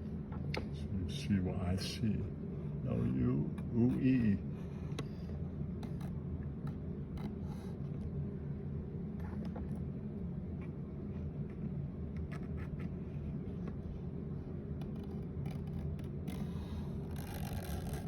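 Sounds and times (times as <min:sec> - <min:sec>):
steady low hum: 0:00.0 - 0:18.0
drawing tool scratching paper: 0:14.9 - 0:18.0.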